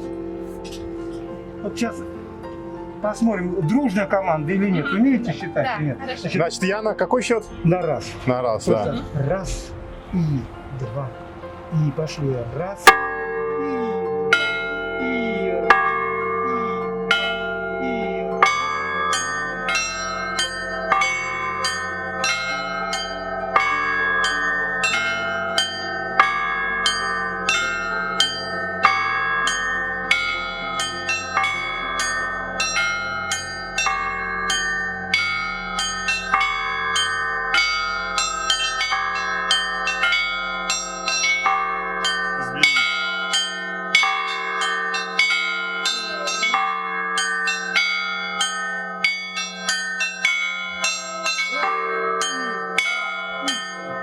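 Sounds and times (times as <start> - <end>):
deep church bell beating: 0.0 - 54.0
small high bells ringing: 12.9 - 54.0.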